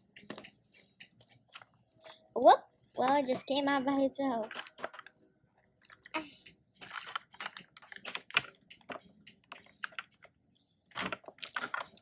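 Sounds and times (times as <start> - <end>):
packaging rustling: 4.4 - 5.1, 6.8 - 8.5, 10.9 - 12.0.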